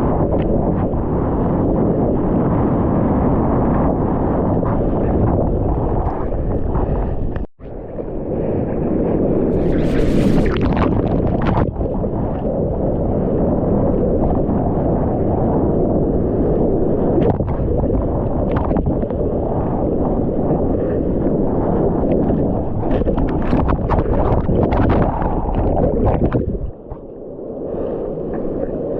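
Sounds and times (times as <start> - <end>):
breaking waves rushing: 8.1 - 13.4
hissing splash: 9.6 - 11.0.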